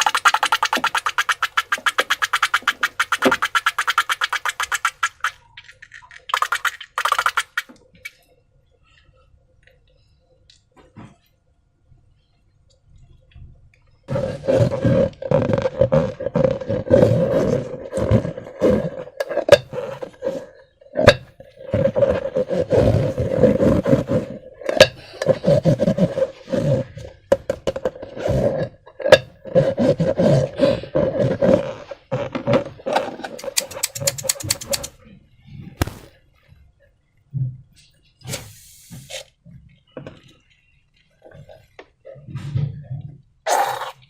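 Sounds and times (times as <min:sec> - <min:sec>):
rubber balloon squealing: 0:14.1 - 0:19.1
quick ticks: 0:33.4 - 0:34.9
balloon snapping: 0:35.8 - 0:36.2.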